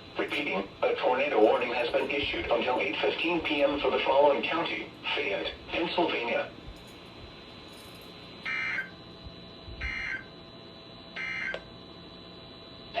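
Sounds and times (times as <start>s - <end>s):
rasping digital data bursts: 8.5s - 8.9s, 9.8s - 10.3s, 11.2s - 11.5s.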